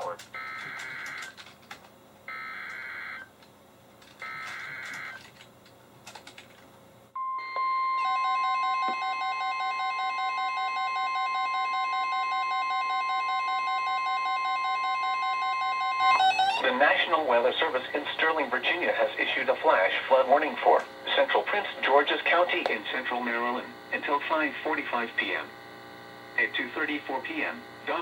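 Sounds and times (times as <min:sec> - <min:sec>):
steady alarm tone: 0:02.3 - 0:03.3, 0:04.2 - 0:05.3, 0:07.2 - 0:17.0
rapidly pulsing alert beeps: 0:15.6 - 0:16.6.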